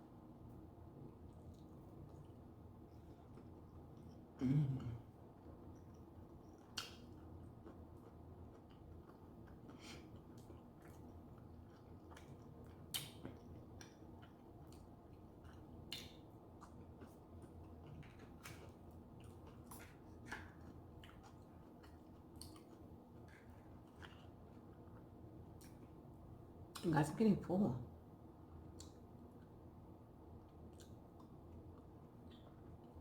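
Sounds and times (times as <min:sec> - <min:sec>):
faint low room hum: 0:00.0 - 0:33.0
person chewing: 0:05.1 - 0:25.9, 0:28.7 - 0:29.5, 0:30.5 - 0:33.0.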